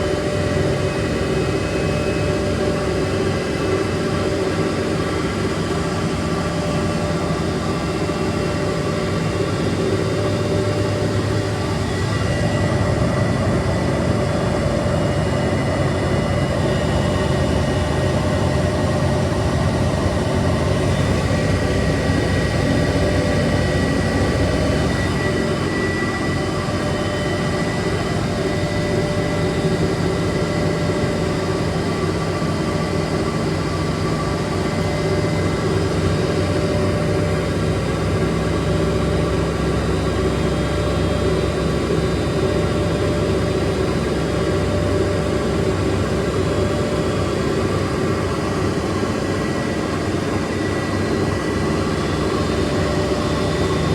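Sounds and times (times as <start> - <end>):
washing machines humming: 0.0 - 53.9.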